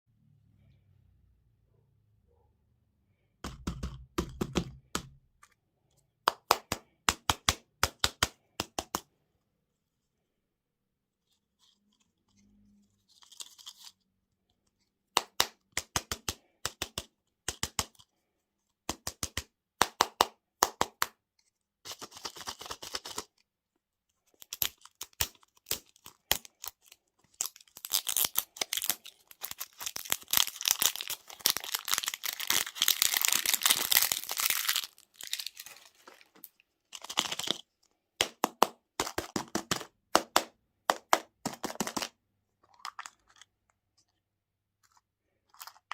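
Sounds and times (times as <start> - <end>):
plastic wrappers crinkling: 24.3 - 37.8.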